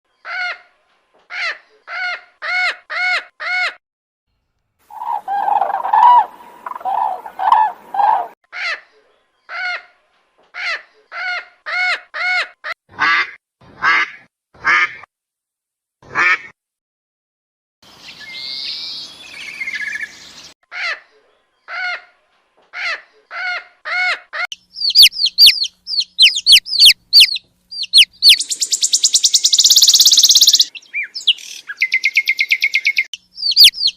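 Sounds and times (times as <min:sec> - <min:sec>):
high bird chirps: 0:04.9 - 0:08.4, 0:18.0 - 0:20.6, 0:24.5 - 0:33.9
bird calls: 0:04.9 - 0:09.9, 0:18.0 - 0:33.9.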